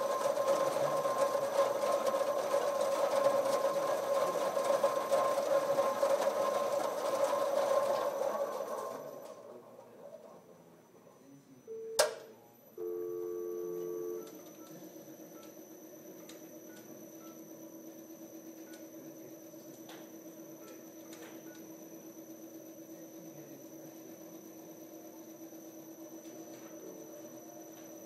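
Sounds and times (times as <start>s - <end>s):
short beep: 11.6s - 17.5s
loud two-tone beep: 11.7s - 15.5s.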